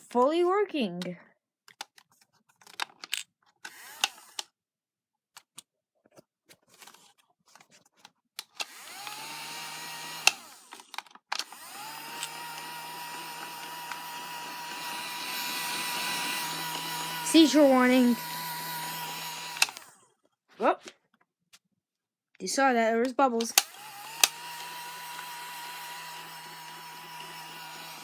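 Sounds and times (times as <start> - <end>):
clicks from handling a toy: 1.7 - 4.5
small fan motor whining: 8.6 - 10.8, 11.4 - 20.0, 23.5 - 28.0.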